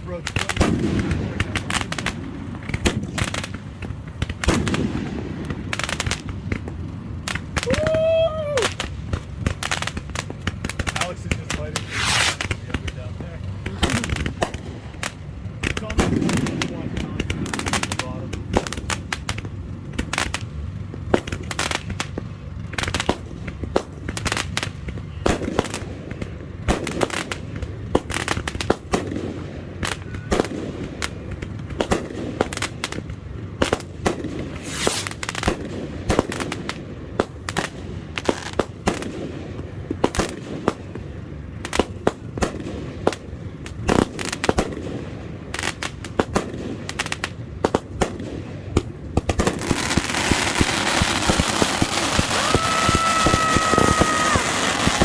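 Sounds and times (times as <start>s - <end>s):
fireworks bangs and pops: 0.0s - 55.0s.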